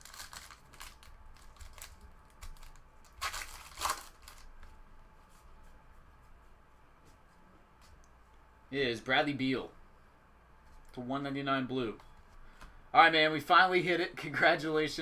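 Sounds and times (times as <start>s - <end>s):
loud wrapper rips: 0.0s - 4.5s
wrapper tearing and crinkling: 0.0s - 4.5s.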